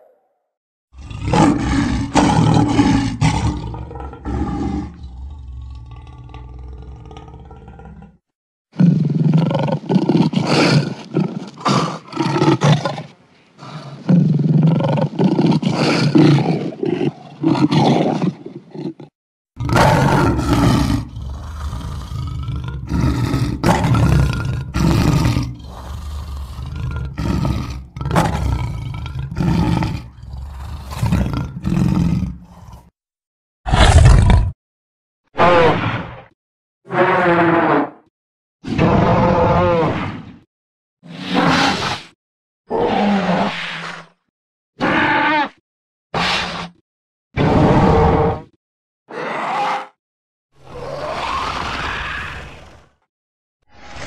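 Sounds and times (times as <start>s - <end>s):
creature growling roars: 1.0s - 8.2s, 13.6s - 33.0s, 33.7s - 34.6s, 35.4s - 38.1s, 38.7s - 40.4s, 42.7s - 43.6s, 47.4s - 50.0s, 50.6s - 53.1s
creature snarls: 1.0s - 8.2s, 13.6s - 33.0s, 33.7s - 34.6s, 49.1s - 50.0s, 50.6s - 53.1s.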